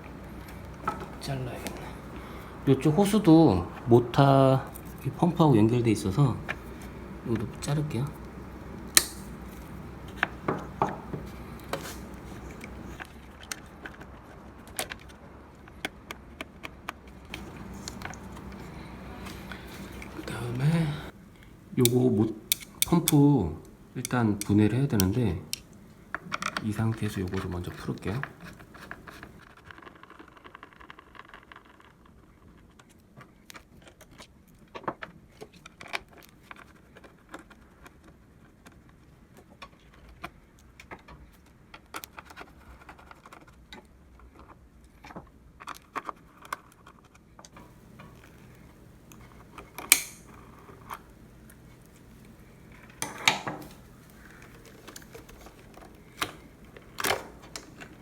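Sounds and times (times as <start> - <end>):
clicks and clinks of metal tools: 49.8 - 50.3.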